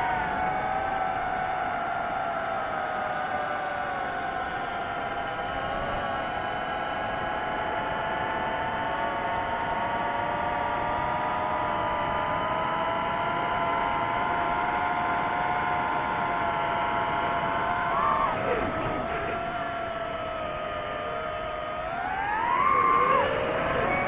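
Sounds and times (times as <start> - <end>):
drone propellers whirring: 16.0 - 24.0.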